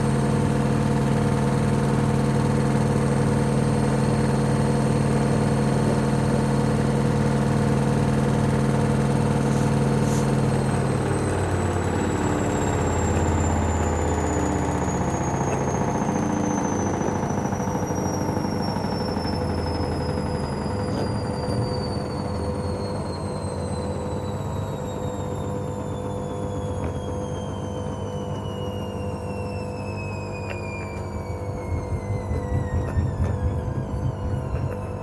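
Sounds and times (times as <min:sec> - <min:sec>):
washing machine motor whine: 0:00.0 - 0:35.0
unbalanced drum low thumping: 0:31.7 - 0:35.0.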